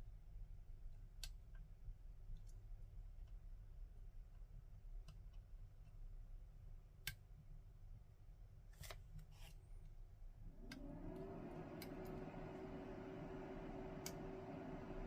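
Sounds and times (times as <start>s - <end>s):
low steady hum: 9.6s - 15.0s.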